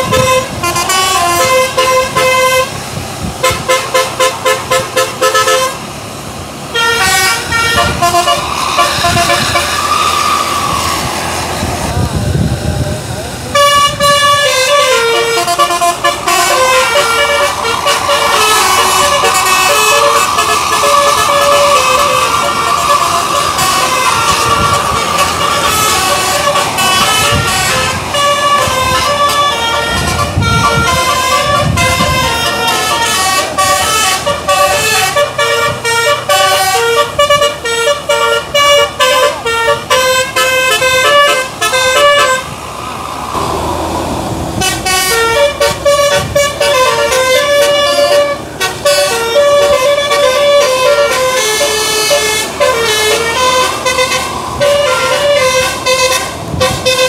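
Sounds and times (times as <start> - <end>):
musical air horn tune: 0.0 - 2.8, 3.4 - 5.9, 6.7 - 10.8, 13.5 - 42.6, 44.5 - 57.0
rushing noise with gliding tone: 7.4 - 14.3, 15.4 - 33.0, 41.5 - 46.8.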